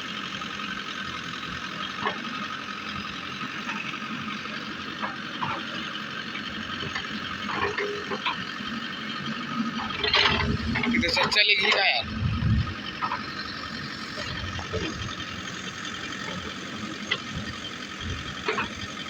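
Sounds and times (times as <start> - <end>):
diesel engine running: 0.0 - 19.0
short knocks and clanks: 9.9 - 12.0.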